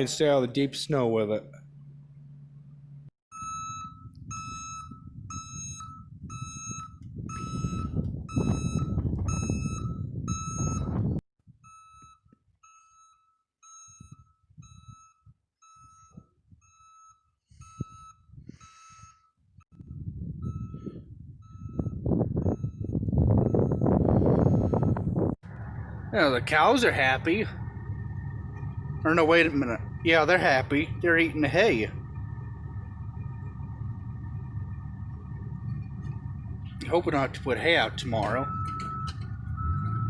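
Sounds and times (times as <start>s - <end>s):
vehicle backup alarm beeping: 3.3s - 40.0s
loud low rumble: 19.8s - 40.0s.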